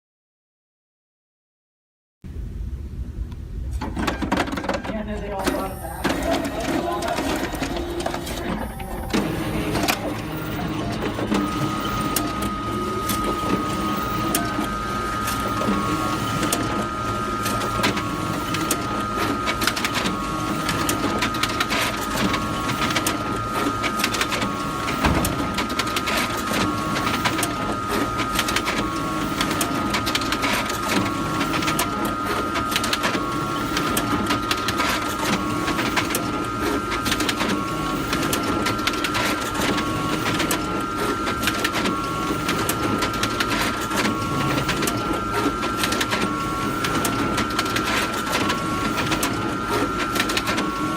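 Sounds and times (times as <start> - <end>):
photocopier high whine: 2.5 - 50.9.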